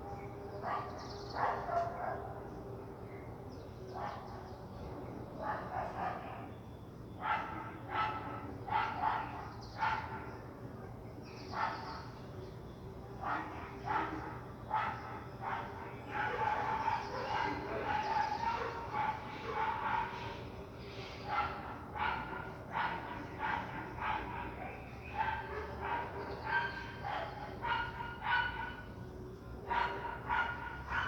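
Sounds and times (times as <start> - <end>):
dog barking: 0.6 - 2.4, 4.0 - 4.3, 5.4 - 6.5, 7.2 - 10.3, 11.6 - 11.9, 13.2 - 20.3, 21.3 - 28.9, 29.7 - 31.0.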